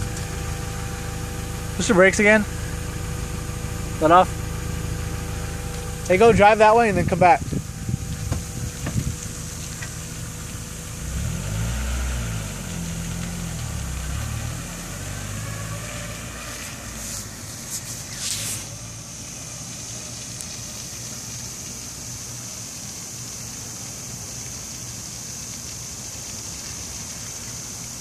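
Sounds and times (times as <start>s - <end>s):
car engine accelerating: 0.0s - 21.4s.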